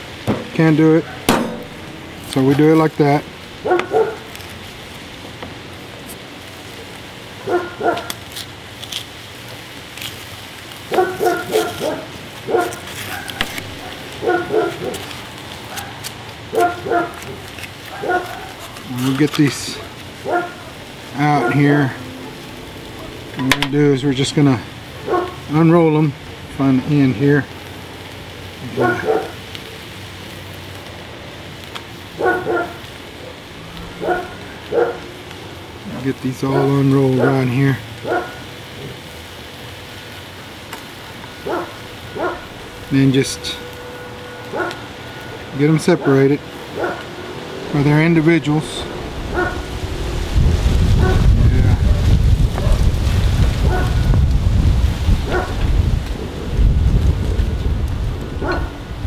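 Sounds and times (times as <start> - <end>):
background hiss: 0.0 - 59.0
dog barking: 3.6 - 4.3, 7.4 - 8.2, 10.9 - 15.1, 15.7 - 18.6, 19.8 - 20.8, 21.4 - 21.6, 25.0 - 25.4, 28.8 - 29.4, 32.2 - 32.8, 34.0 - 35.1, 36.5 - 37.4, 38.0 - 38.4, 41.4 - 42.5, 44.5 - 45.4, 46.8 - 47.2, 49.3 - 49.7, 51.0 - 52.9, 53.6 - 54.0, 55.3 - 55.6, 58.4 - 58.8.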